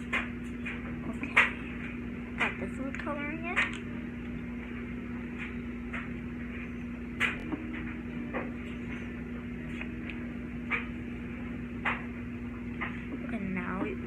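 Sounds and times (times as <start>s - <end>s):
steady low hum: 0.0s - 14.0s.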